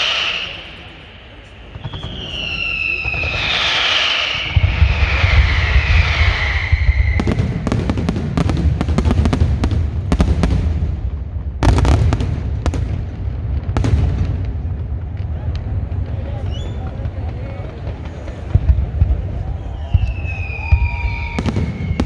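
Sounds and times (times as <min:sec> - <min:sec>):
falling firework whistle: 0:00.0 - 0:00.8, 0:01.7 - 0:07.9, 0:16.4 - 0:17.0, 0:18.5 - 0:22.0
rumble of fireworks explosions: 0:00.0 - 0:22.0.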